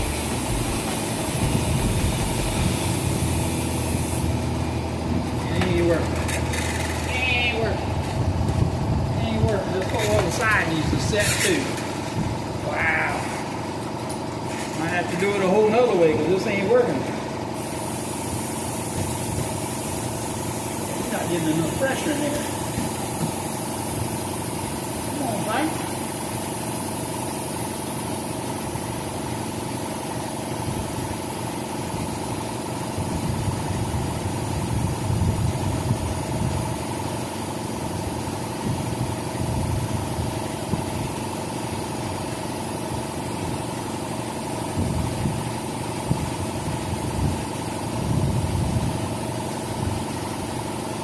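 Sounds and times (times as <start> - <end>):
air hissing into tire: 0.0 - 5.0, 17.6 - 28.0
air compressor running: 0.0 - 51.0.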